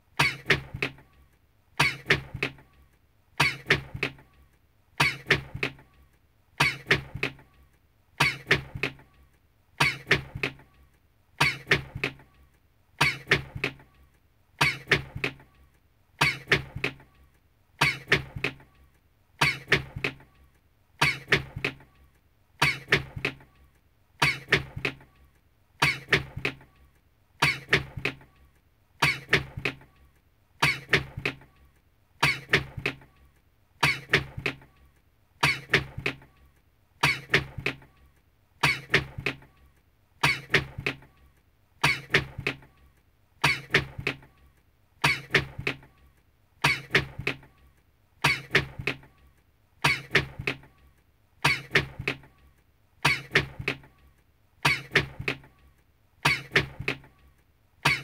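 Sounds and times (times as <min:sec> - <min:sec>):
person sneezing: 0:00.2 - 0:00.6, 0:01.8 - 0:02.2, 0:03.4 - 0:03.8, 0:05.0 - 0:05.4, 0:06.6 - 0:07.0, 0:08.2 - 0:08.6, 0:09.8 - 0:10.3, 0:11.4 - 0:11.8, 0:13.0 - 0:13.4, 0:14.6 - 0:15.1, 0:16.2 - 0:16.6, 0:19.4 - 0:19.8, 0:32.2 - 0:32.6, 0:33.8 - 0:34.2, 0:37.0 - 0:37.4, 0:38.6 - 0:39.0, 0:40.2 - 0:40.7, 0:41.8 - 0:42.3, 0:43.4 - 0:43.9, 0:45.0 - 0:45.5, 0:46.6 - 0:47.1, 0:48.2 - 0:48.7, 0:49.8 - 0:50.3, 0:51.4 - 0:51.9, 0:53.0 - 0:53.5, 0:54.6 - 0:55.1, 0:56.2 - 0:56.6.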